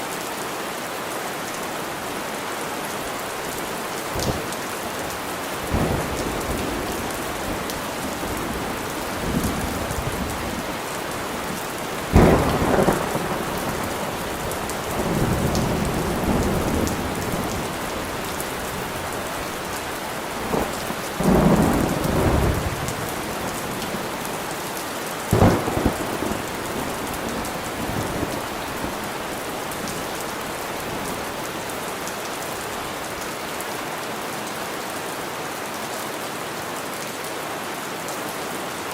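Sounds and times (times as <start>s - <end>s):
steady rain falling: 0.0s - 38.9s
sharp thunderclaps: 5.6s - 18.2s, 25.3s - 29.0s
rolling thunder rumble: 5.6s - 19.8s, 25.3s - 31.3s.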